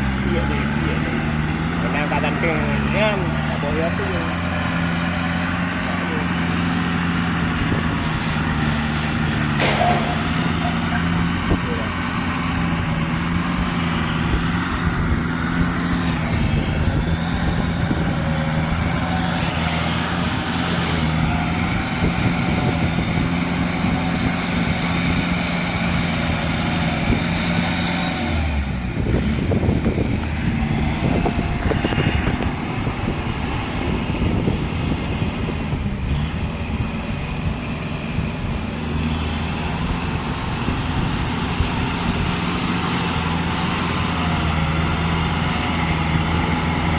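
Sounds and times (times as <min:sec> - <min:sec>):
plowing machine engine running: 0:00.0 - 0:46.9.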